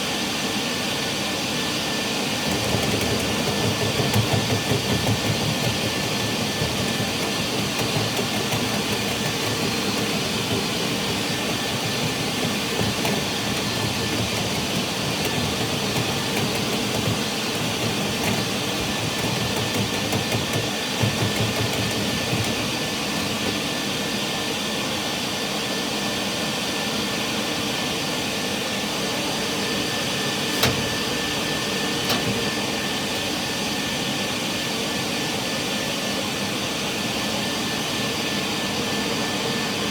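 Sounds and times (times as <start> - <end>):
vacuum running: 0.0 - 39.9.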